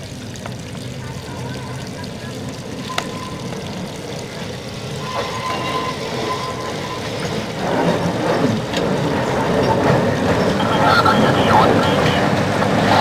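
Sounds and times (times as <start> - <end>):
trolley car on rails: 0.0 - 13.0
steady high tone: 1.3 - 8.1.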